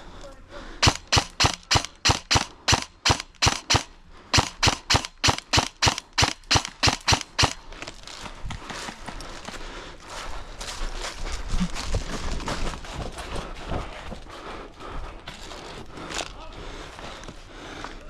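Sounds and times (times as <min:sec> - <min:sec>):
airsoft gun shots: 0:00.8 - 0:07.6
rustling through undergrowth: 0:07.7 - 0:14.2.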